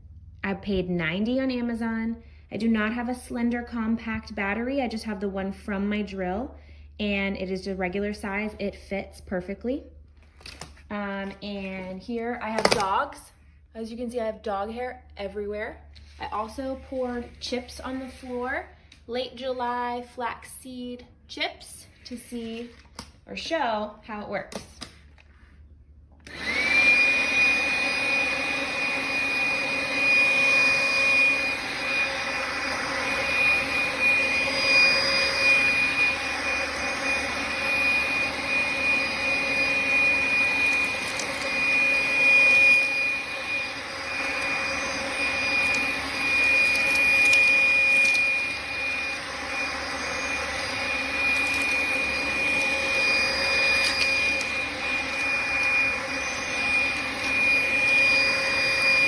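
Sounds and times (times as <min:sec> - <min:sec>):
stick vacuum whining: 0:26.1 - 0:59.0.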